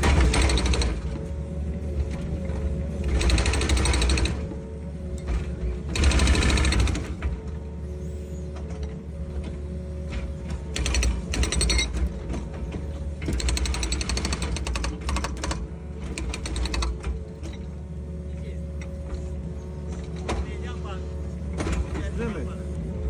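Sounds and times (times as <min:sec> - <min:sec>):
rapid mechanical clatter: 0:00.0 - 0:01.2, 0:03.0 - 0:04.5, 0:05.9 - 0:07.4, 0:13.2 - 0:17.2
excavator engine hum: 0:00.0 - 0:23.0.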